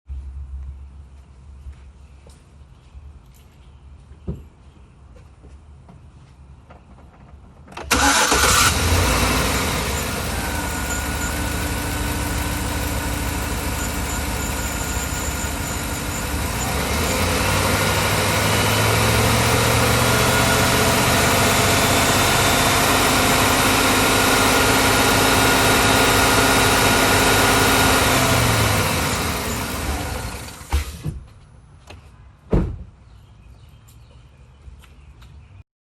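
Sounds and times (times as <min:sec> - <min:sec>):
engine starting and idling: 0:07.8 - 0:31.0.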